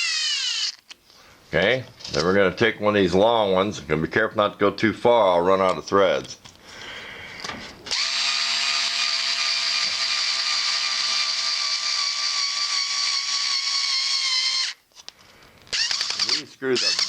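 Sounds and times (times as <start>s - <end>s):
cordless screwdriver motor whining: 0.0s - 0.9s, 7.9s - 14.8s, 15.7s - 17.0s.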